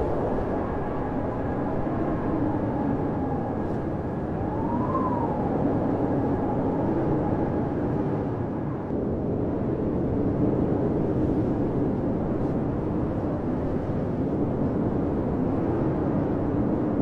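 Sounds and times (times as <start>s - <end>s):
wind whistling: 0.0s - 8.9s
blizzard wind rushing: 0.0s - 17.0s.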